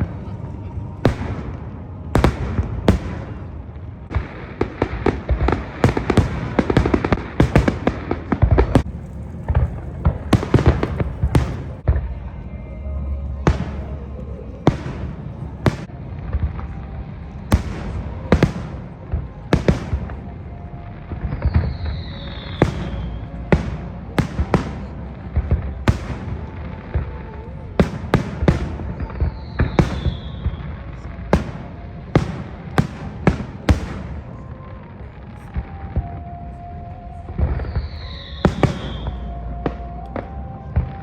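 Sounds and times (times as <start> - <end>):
low rumble: 0.0 - 41.0
fireworks bangs: 1.0 - 12.2, 13.4 - 20.5, 21.1 - 36.4, 37.3 - 41.0
descending firework whistle: 13.4 - 41.0.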